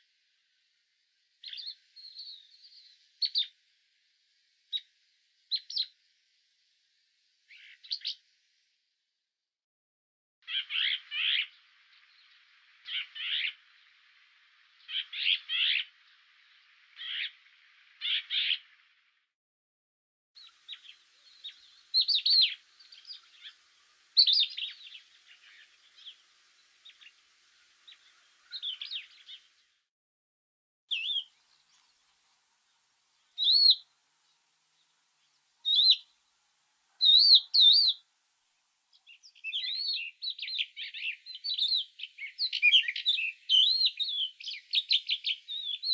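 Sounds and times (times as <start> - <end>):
songbirds chirping and singing: 1.4 - 3.6, 5.5 - 6.0, 7.5 - 8.2, 10.4 - 19.0, 20.4 - 29.7, 30.9 - 36.2, 36.9 - 38.0, 38.9 - 45.9.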